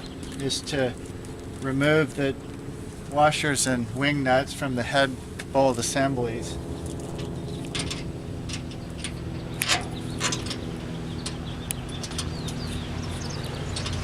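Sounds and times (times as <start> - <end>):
steady low hum: 0.0 - 14.0
metal clicks of washers and nuts: 6.9 - 12.6.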